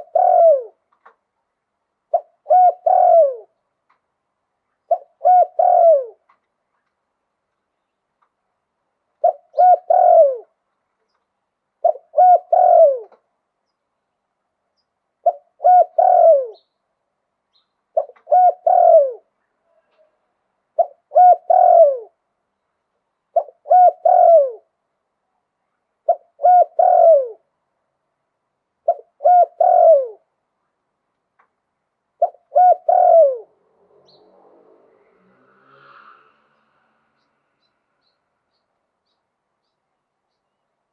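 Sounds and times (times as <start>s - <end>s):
dove cooing: 0.0s - 0.8s, 2.1s - 3.6s, 4.9s - 6.3s, 9.2s - 10.6s, 11.8s - 13.2s, 15.2s - 16.7s, 18.0s - 19.3s, 20.8s - 22.2s, 23.3s - 24.7s, 26.1s - 27.5s, 28.8s - 30.3s, 32.2s - 36.2s.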